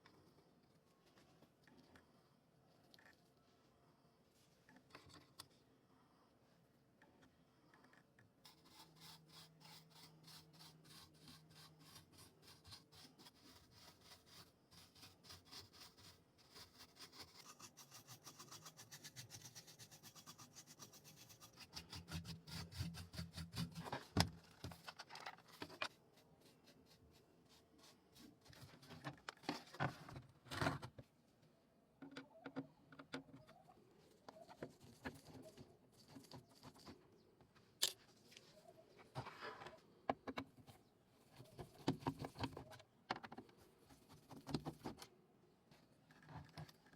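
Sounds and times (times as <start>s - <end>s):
rubbing on keyboard plastic: 8.5s - 29.9s.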